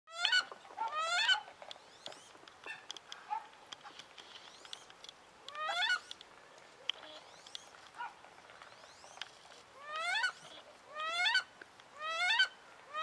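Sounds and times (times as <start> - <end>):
duck squealing calls: 0.1 - 1.5, 5.5 - 6.1, 9.8 - 13.0.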